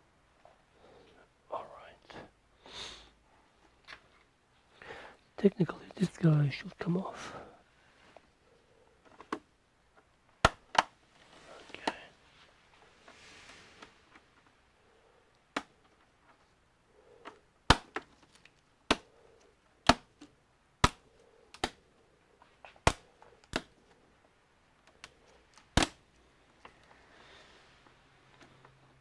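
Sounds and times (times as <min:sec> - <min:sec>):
plastic clips snapping: 0:10.4 - 0:11.0, 0:15.4 - 0:15.8, 0:17.2 - 0:19.1, 0:19.8 - 0:21.8, 0:22.6 - 0:23.8, 0:24.8 - 0:26.9.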